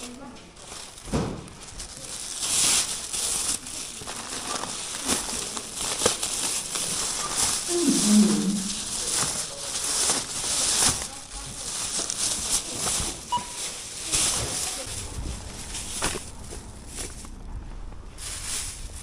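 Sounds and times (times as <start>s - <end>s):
plastic bags rustling: 0.0s - 19.0s.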